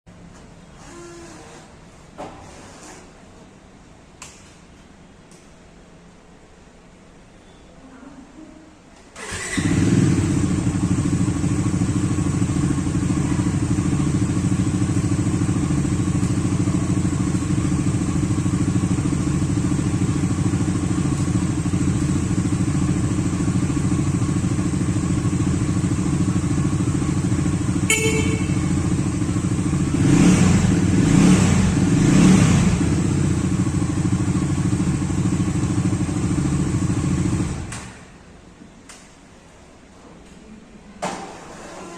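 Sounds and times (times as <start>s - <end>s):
motorcycle engine idling: 9.2s - 37.7s
motorcycle throttle blips: 9.2s - 37.9s.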